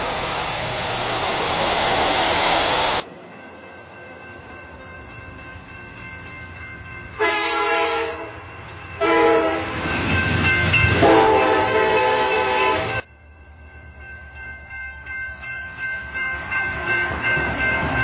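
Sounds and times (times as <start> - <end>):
train rumbling: 0.0 - 18.0
railroad crossing signal ringing: 3.0 - 18.0
train horn: 7.2 - 8.4, 9.0 - 9.7, 11.0 - 13.1.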